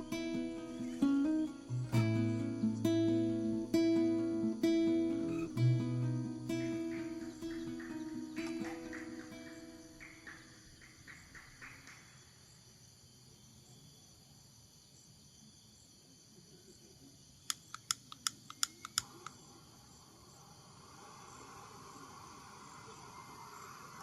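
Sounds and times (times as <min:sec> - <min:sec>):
soft hiss: 0:00.0 - 0:12.2, 0:17.6 - 0:24.0
high insect chirring: 0:00.0 - 0:12.4, 0:17.5 - 0:24.0
sharp clicks: 0:17.5 - 0:19.4.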